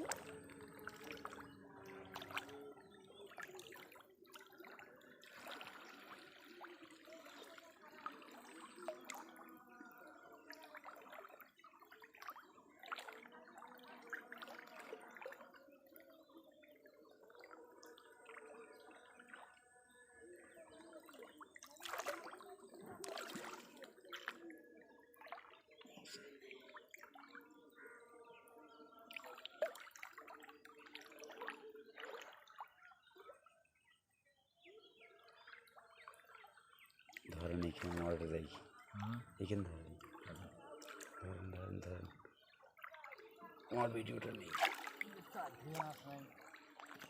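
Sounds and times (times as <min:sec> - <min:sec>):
water splashing: 0:00.0 - 0:16.4, 0:20.8 - 0:27.9, 0:29.1 - 0:32.8, 0:35.3 - 0:47.0
water trickling and dripping: 0:00.0 - 0:19.6, 0:35.2 - 0:47.0.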